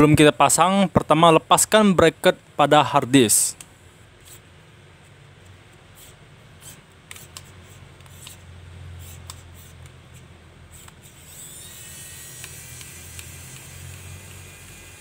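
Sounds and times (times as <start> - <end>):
screwdriver clicks: 12.3 - 14.4.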